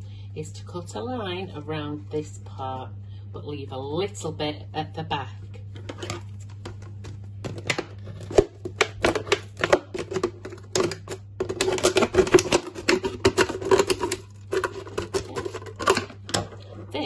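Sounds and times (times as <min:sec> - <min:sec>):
plastic bottle crackling: 0:05.9 - 0:17.0.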